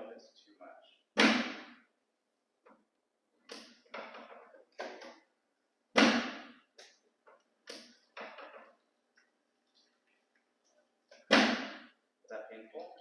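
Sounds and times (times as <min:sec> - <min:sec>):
adjusting equipment sharp clacks: 0:03.4 - 0:05.2.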